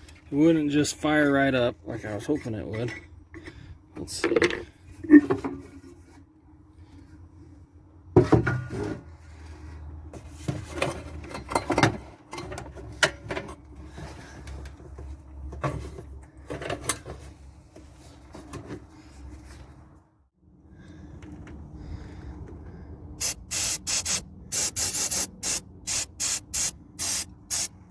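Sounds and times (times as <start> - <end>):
tools and parts knocking and rattling: 2.4 - 6.0, 10.2 - 18.9.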